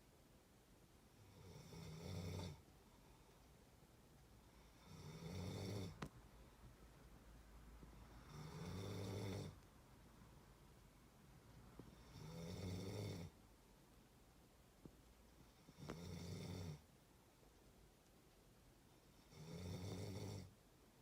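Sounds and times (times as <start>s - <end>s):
person snoring: 4.6s - 6.0s, 8.2s - 9.6s, 12.0s - 13.4s, 15.7s - 16.8s, 19.3s - 20.5s.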